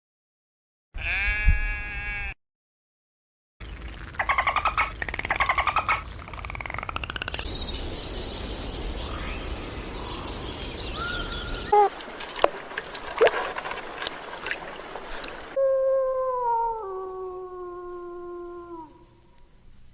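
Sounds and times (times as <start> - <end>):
bleat-like animal call: 1.0 - 2.4
pulsed trilling calls: 3.6 - 12.2
steady hiss: 7.5 - 15.6.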